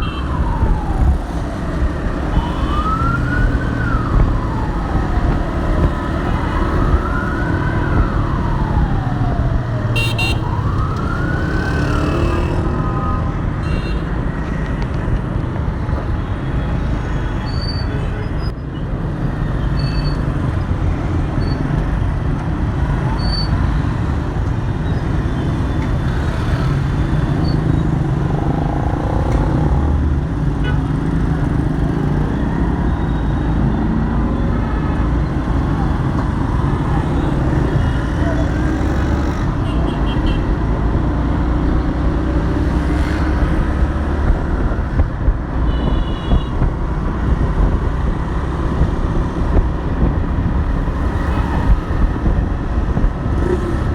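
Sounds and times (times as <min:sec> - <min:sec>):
ambulance siren wailing: 0:00.0 - 0:13.9
road traffic rumble: 0:00.0 - 0:53.9.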